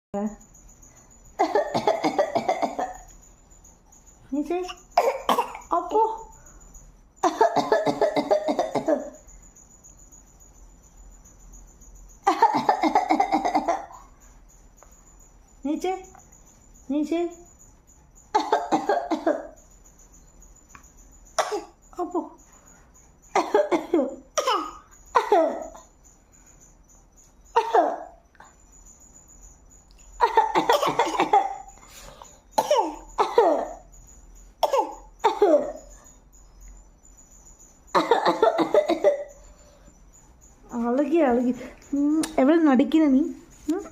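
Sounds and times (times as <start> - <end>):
person fake-coughing: 1.4 - 3.1, 4.7 - 6.0, 7.2 - 9.2, 12.2 - 14.1, 18.3 - 19.6, 21.4 - 22.1, 23.3 - 25.9, 27.6 - 28.2, 30.2 - 31.8, 32.6 - 33.9, 34.6 - 35.9, 37.9 - 39.4.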